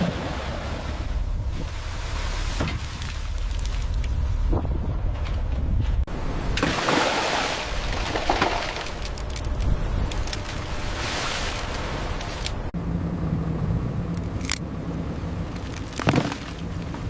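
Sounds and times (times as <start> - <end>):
seawater rushing and splashing: 0.0 - 4.0, 6.1 - 9.1, 9.8 - 12.7
low engine rumble: 0.0 - 17.0.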